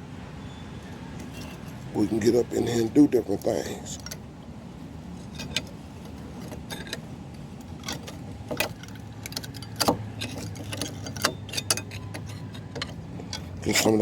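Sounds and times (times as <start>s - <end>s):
low steady hum: 0.0s - 14.0s
file scraping metal brake pads: 1.2s - 2.4s, 5.2s - 7.0s, 7.8s - 14.0s.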